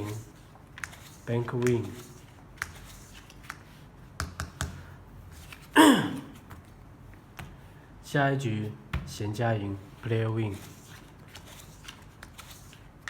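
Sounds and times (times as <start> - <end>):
playing cards clicking and sliding: 0.0 - 5.8, 10.5 - 13.0.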